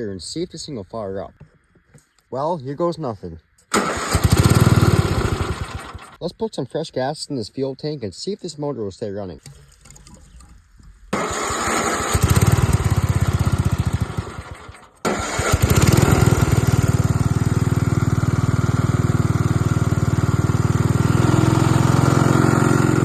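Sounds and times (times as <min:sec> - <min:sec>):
riding mower engine running: 0:03.7 - 0:06.2, 0:11.2 - 0:23.0.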